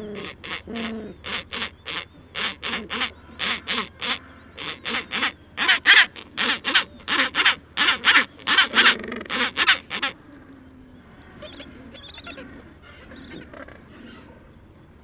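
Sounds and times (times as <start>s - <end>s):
penguin braying: 0.0s - 10.2s.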